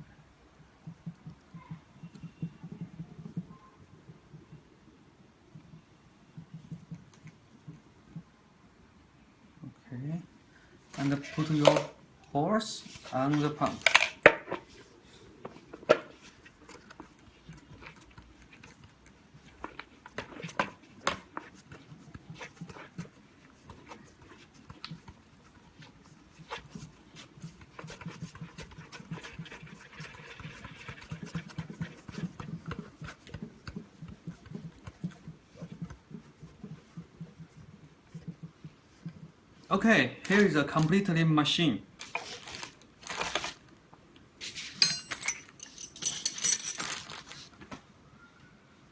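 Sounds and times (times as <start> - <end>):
sharp metallic clink: 44.8 - 45.5
metal tools clattering: 44.8 - 47.2.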